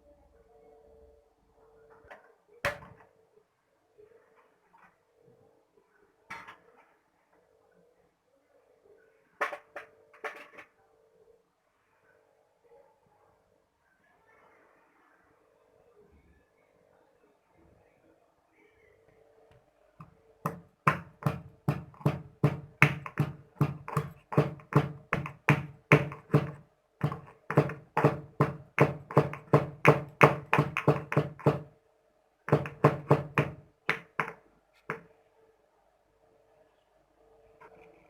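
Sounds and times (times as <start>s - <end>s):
rhythmic knocking on hard surface: 20.4s - 31.7s, 32.5s - 34.4s.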